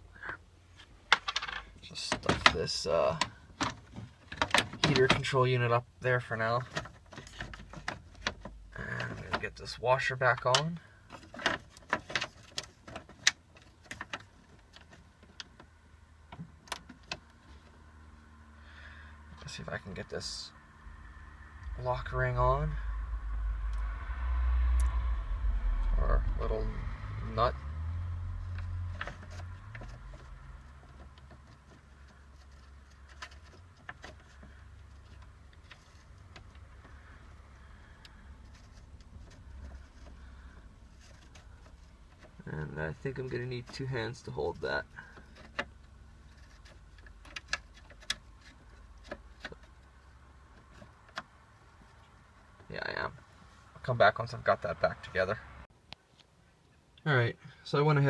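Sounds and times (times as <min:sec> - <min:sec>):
low rumble: 0:19.4 - 0:31.2.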